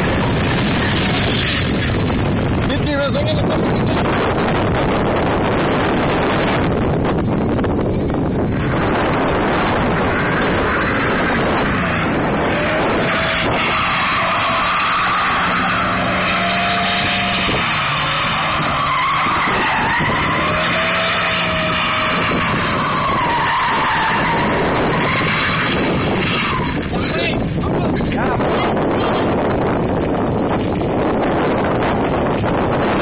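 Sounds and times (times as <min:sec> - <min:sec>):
tyres squealing on pavement: 0:00.0 - 0:03.9, 0:08.5 - 0:29.3.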